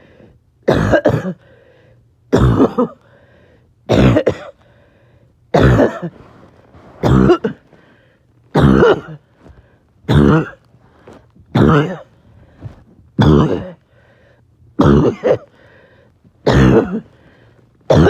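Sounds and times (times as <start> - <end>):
person coughing harshly: 0.6 - 1.5, 2.3 - 3.0, 3.9 - 4.6, 5.6 - 6.3, 7.0 - 7.8, 8.5 - 13.8, 14.8 - 15.6, 16.4 - 17.2.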